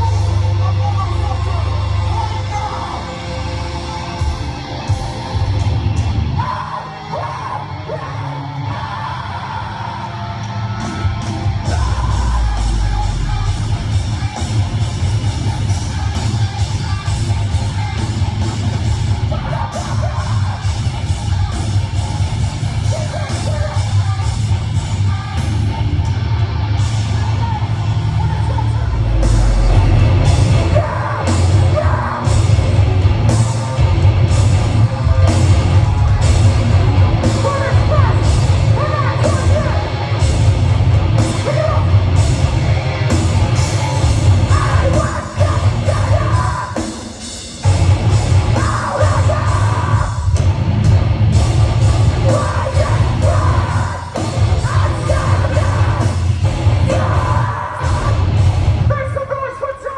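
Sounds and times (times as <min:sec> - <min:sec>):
heavy metal band playing live: 0:00.0 - 0:59.9
person yelling vocals: 0:44.4 - 0:46.8.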